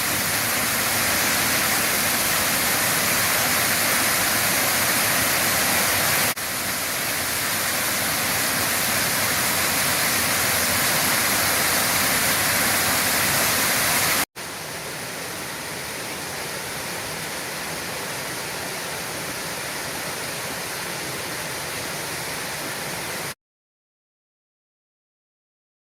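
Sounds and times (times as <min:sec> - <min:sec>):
waterfall rushing: 0:00.0 - 0:23.4.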